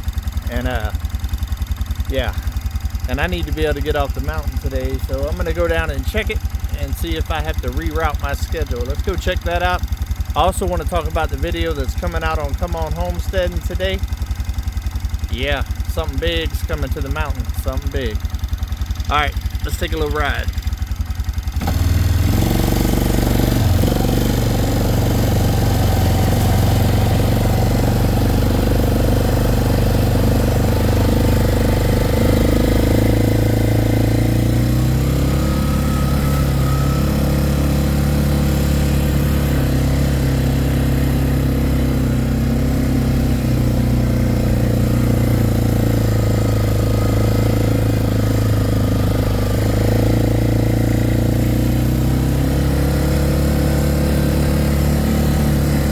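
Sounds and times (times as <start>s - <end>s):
vehicle engine running: 0.0s - 55.9s.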